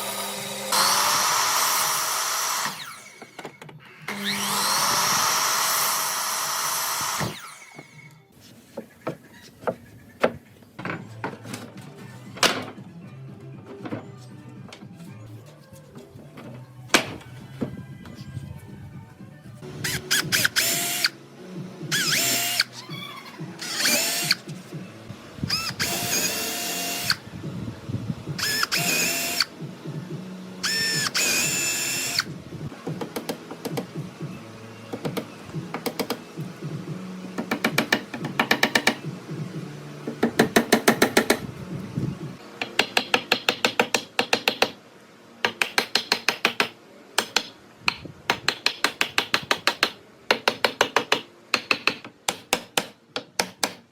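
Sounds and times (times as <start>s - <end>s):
power drill whirring: 0.0s - 8.1s, 19.8s - 21.1s, 21.9s - 22.7s, 23.6s - 24.4s, 25.4s - 27.2s, 28.4s - 29.5s, 30.6s - 32.3s.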